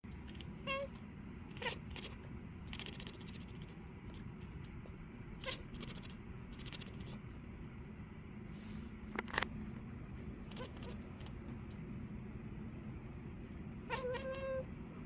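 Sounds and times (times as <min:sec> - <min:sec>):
cat chirping: 0:00.3 - 0:04.2, 0:05.4 - 0:07.2, 0:10.4 - 0:11.4, 0:13.9 - 0:14.7.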